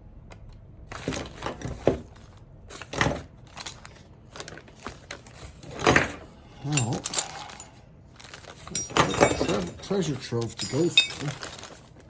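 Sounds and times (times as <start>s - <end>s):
metal parts clinking: 2.7s - 12.0s
bubble wrap crinkling: 10.0s - 12.0s.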